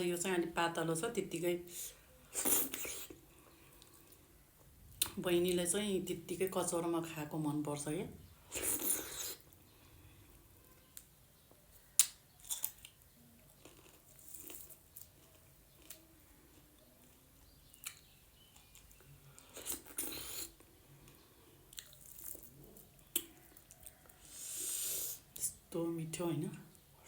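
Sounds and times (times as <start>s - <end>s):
wet mouth noise: 2.3s - 3.2s, 8.5s - 9.5s, 19.4s - 20.7s
chewing and mouth smacks: 11.8s - 24.3s.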